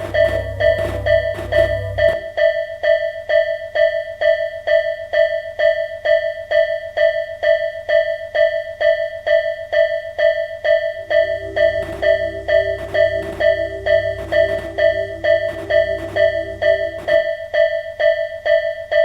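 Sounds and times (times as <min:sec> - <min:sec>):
level crossing alarm bell ringing: 0:10.2 - 0:19.0.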